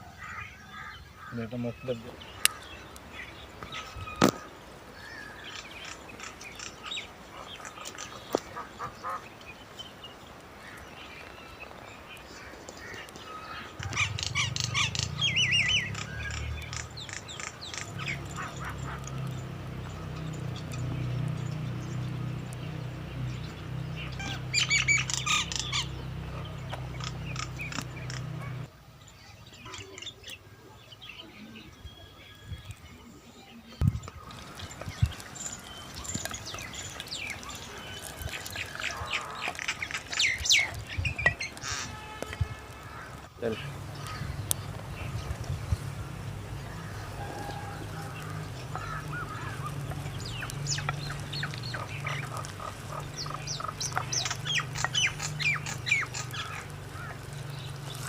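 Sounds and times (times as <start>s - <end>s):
birds squawking: 0.0s - 28.7s, 33.5s - 58.0s
bird warbling trill: 12.8s - 19.4s, 46.7s - 57.3s.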